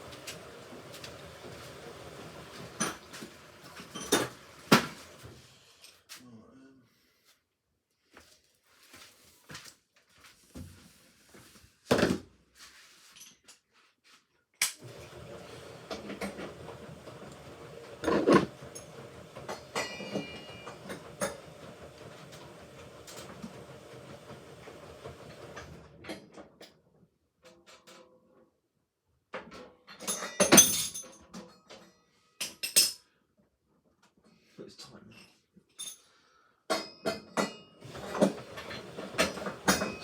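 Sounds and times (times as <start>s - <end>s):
washing machine running: 0.0s - 5.6s, 14.8s - 26.5s, 37.4s - 40.0s
washing machine clunks: 0.1s - 5.2s, 14.8s - 26.2s, 37.8s - 40.0s.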